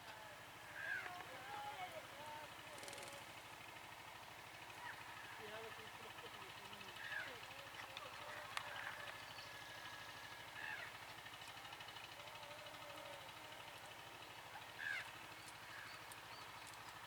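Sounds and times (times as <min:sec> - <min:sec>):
birds calling: 0:06.2 - 0:11.2, 0:14.4 - 0:17.0.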